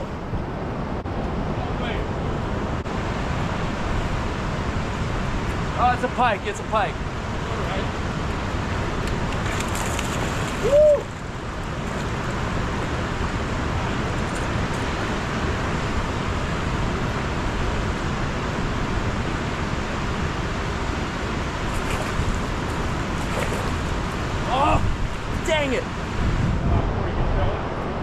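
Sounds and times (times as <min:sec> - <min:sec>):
river water rushing: 0:02.1 - 0:26.4
person whooping shout: 0:10.6 - 0:11.1.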